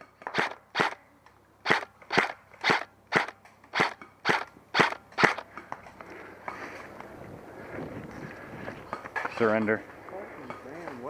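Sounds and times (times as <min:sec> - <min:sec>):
airsoft gun shots: 0:00.3 - 0:01.0, 0:01.6 - 0:05.4.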